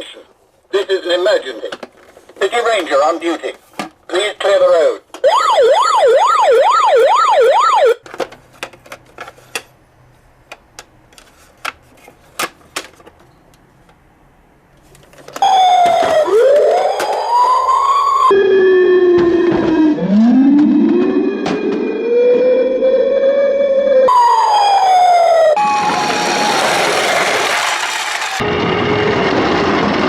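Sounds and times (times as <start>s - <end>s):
toy electronic siren: 5.2s - 8.0s, 15.4s - 27.0s.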